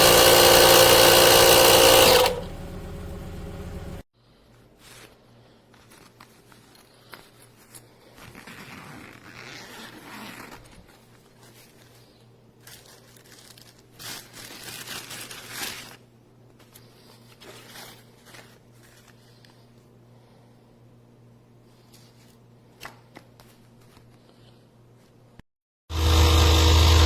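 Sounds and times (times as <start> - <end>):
rustling scraping handling noise: 4.5 - 19.8.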